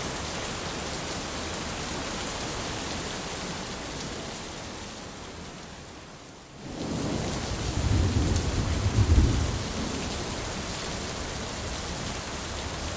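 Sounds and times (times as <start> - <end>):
steady rain: 0.0 - 12.9
thunder rolling: 6.8 - 10.0.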